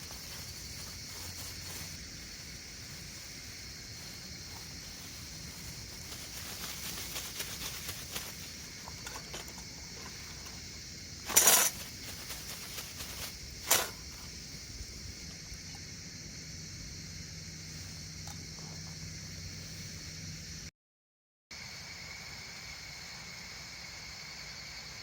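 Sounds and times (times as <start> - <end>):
faint high hiss: 0.0 - 20.7.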